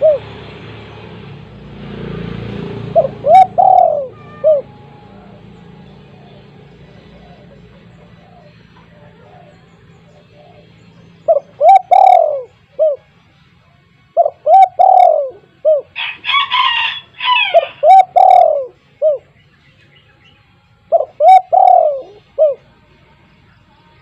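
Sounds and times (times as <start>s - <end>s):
dove cooing: 0.0s - 0.4s, 2.8s - 13.1s, 14.2s - 19.4s, 20.9s - 22.7s.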